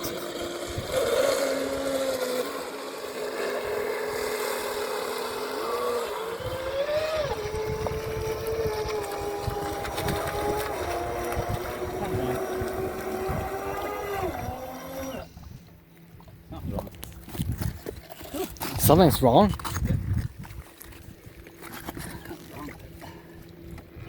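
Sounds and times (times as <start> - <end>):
hull hissing on water: 0.0 - 8.6
remote-control boat motor whine: 0.0 - 15.9.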